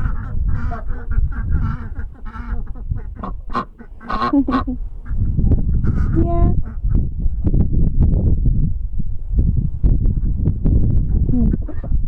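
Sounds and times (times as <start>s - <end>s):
ducks quacking: 0.0s - 7.0s.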